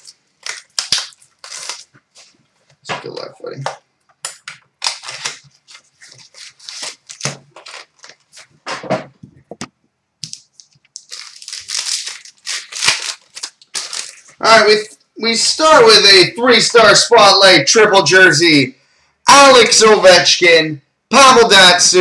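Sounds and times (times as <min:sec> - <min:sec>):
plastic wrapping tearing and crinkling: 0:00.0 - 0:03.3, 0:04.2 - 0:08.6, 0:10.2 - 0:14.7
cards being handled: 0:00.0 - 0:14.4.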